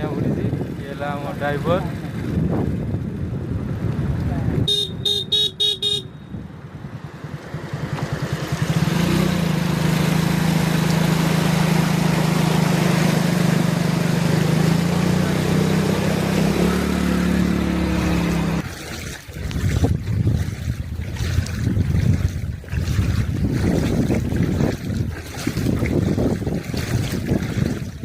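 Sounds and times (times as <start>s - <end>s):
vehicle engine running: 3.0s - 18.6s
vehicle horn beeps: 4.7s - 6.5s.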